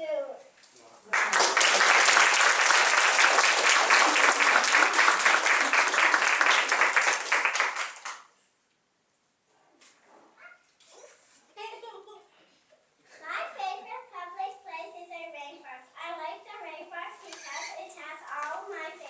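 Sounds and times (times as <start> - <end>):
audience applauding: 1.1 - 8.3.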